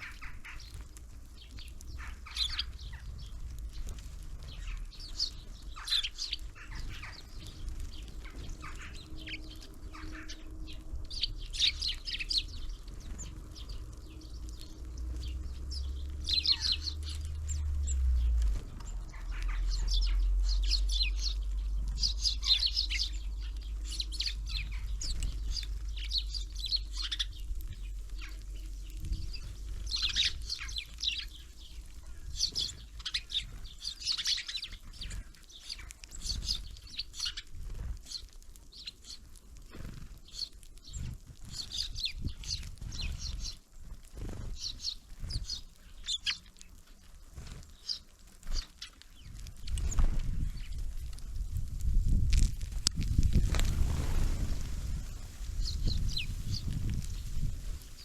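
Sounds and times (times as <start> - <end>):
low rumble: 0.0 - 35.3, 49.4 - 58.0
songbirds chirping: 0.0 - 58.0.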